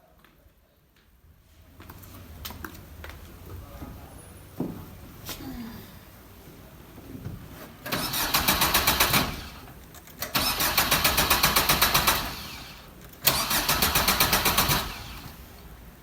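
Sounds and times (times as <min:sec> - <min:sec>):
car engine cranking: 0:07.8 - 0:15.6.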